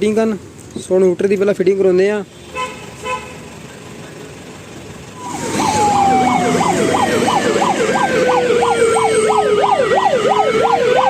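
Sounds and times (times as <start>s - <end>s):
fast yelping siren: 5.2s - 11.0s.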